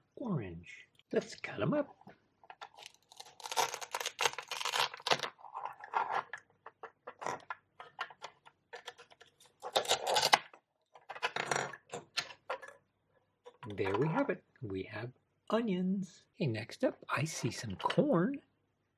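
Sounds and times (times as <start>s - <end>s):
velcro strips tearing apart: 2.8s - 5.2s.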